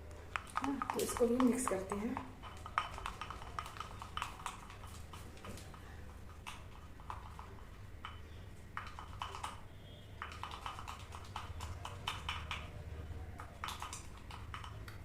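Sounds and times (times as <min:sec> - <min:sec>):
brush tapping and scraping a bowl: 0:00.2 - 0:09.6, 0:10.2 - 0:12.7, 0:13.4 - 0:15.0.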